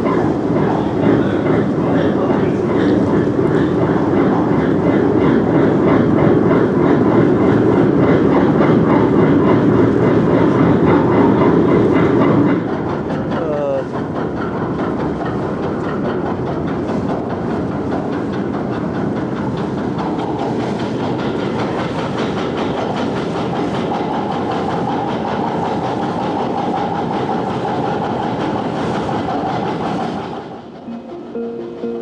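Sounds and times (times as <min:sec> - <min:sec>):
steady whine: 0:00.0 - 0:09.2
chain ferry rumbling and rattling: 0:00.0 - 0:24.9.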